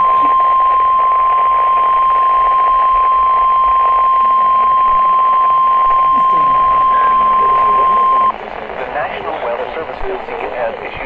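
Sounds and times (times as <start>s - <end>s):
high warning alarm tone: 0.0s - 8.3s
radio static hiss: 0.0s - 11.0s.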